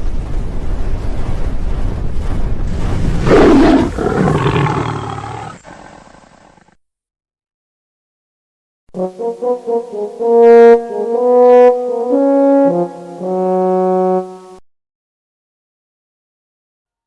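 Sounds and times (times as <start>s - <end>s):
brass musical phrase: 8.9s - 14.6s.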